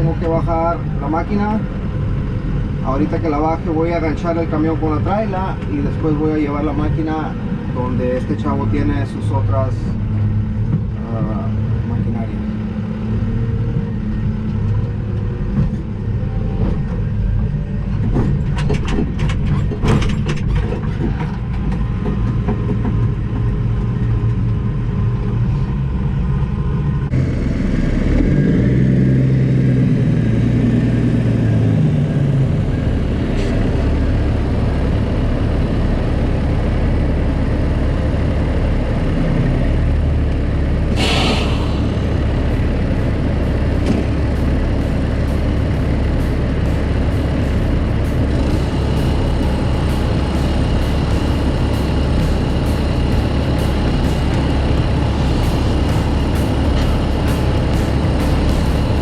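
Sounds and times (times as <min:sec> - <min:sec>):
heavy diesel engine running: 0:00.0 - 0:59.0
loud hiss of air: 0:40.9 - 0:43.6.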